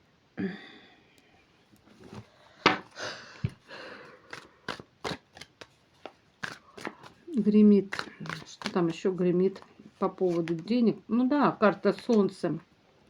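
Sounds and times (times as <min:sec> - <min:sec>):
cards rustling: 0:04.2 - 0:10.7.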